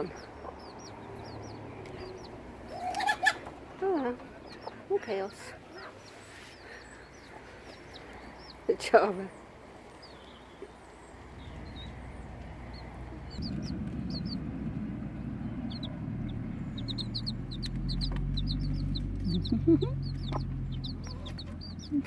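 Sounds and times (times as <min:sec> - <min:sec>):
chicks peeping: 0:00.0 - 0:22.0
low rumble and hum: 0:11.2 - 0:22.0.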